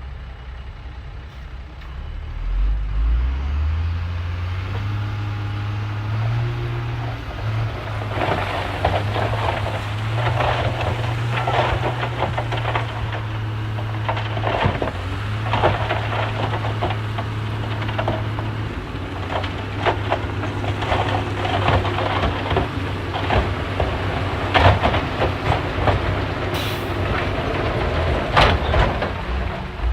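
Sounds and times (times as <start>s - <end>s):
bulldozer diesel engine: 0.0s - 29.9s
soil and rocks clattering: 6.1s - 29.9s.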